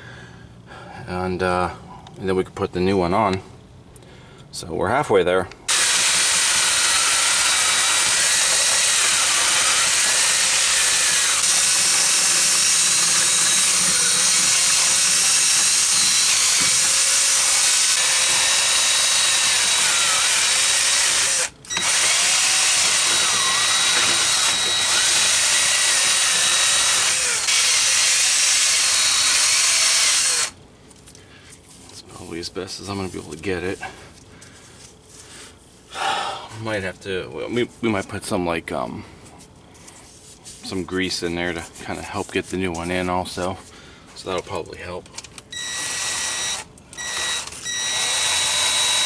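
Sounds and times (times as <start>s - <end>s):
power drill with wire brush: 5.7s - 30.6s, 45.6s - 49.0s.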